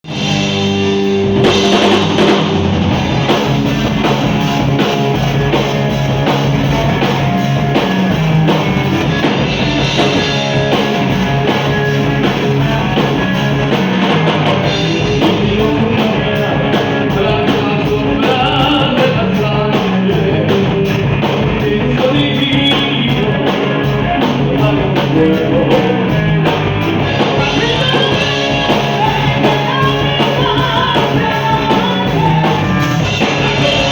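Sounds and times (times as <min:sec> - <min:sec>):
drum kit beat: 0:00.0 - 0:33.9
heavy metal band playing live: 0:00.0 - 0:33.9.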